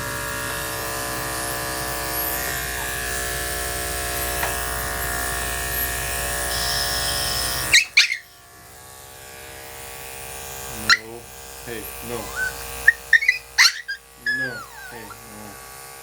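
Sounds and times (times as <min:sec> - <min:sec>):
electric clippers humming: 0:00.0 - 0:16.0
puppy yelping: 0:07.6 - 0:08.4, 0:10.8 - 0:11.2, 0:12.0 - 0:15.4.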